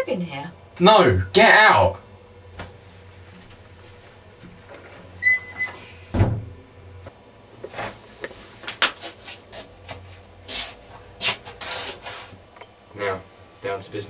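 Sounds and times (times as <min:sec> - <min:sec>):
door squeaking: 0:05.2 - 0:06.5
door shutting with heavy thump: 0:05.6 - 0:06.6.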